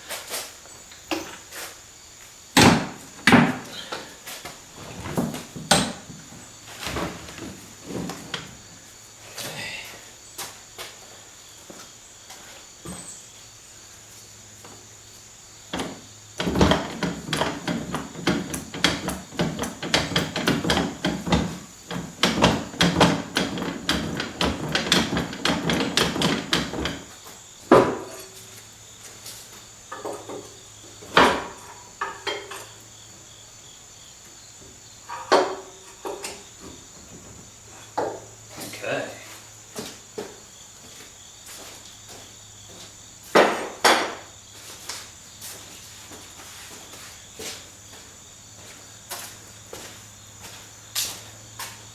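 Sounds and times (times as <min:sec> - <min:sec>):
sharp knocks: 0:02.6 - 0:03.7, 0:15.7 - 0:27.1
tools clattering on metal: 0:15.7 - 0:27.1, 0:35.1 - 0:36.4.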